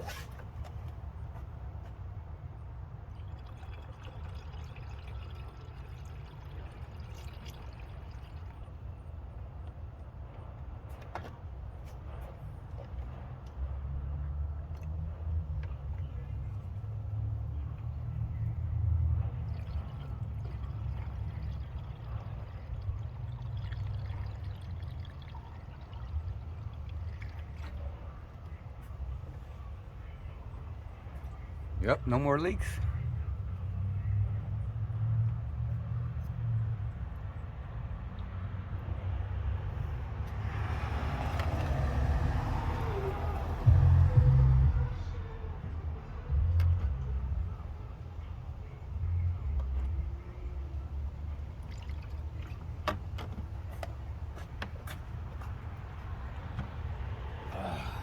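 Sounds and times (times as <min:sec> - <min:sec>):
liquid pouring with gurgle: 0:03.0 - 0:09.1, 0:19.0 - 0:28.5, 0:51.1 - 0:52.8.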